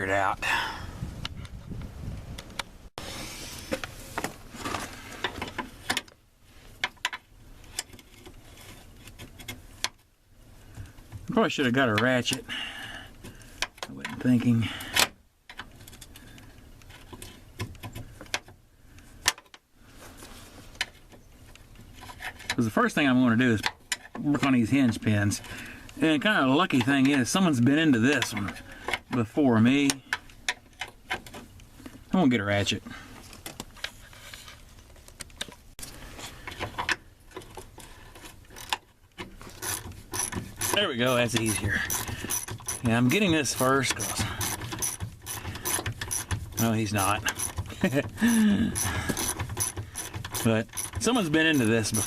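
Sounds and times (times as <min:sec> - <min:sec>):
hand tools clicking on metal: 0:39.6 - 0:52.0.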